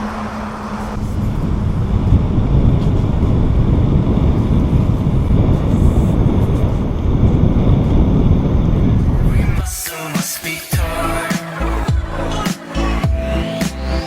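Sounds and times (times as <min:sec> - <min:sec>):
wind buffeting microphone: 0:00.0 - 0:09.6.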